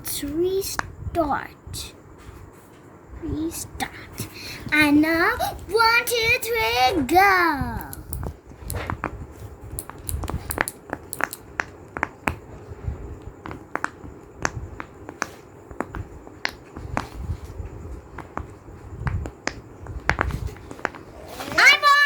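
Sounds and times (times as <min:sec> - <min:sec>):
fidget toys popping: 0:07.7 - 0:17.3, 0:18.1 - 0:22.0.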